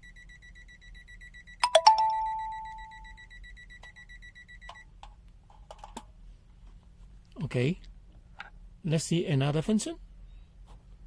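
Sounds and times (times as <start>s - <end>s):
ringing tone: 1.6s - 4.6s.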